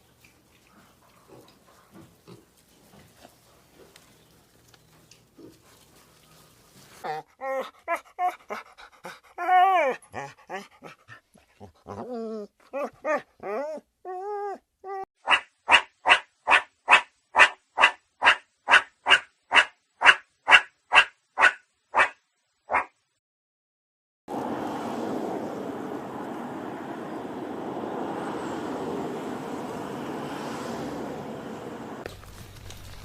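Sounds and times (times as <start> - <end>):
dog whining and yelping: 7.0 - 15.1
dog barking: 15.2 - 23.0.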